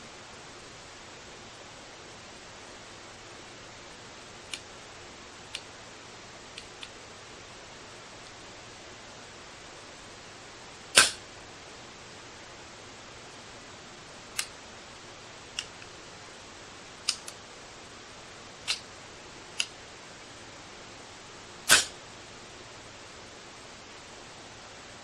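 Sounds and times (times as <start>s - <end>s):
air rifle shot: 11.0s - 11.2s, 21.7s - 22.0s
lighter clicks: 11.0s - 11.2s, 17.1s - 17.4s, 21.7s - 21.9s.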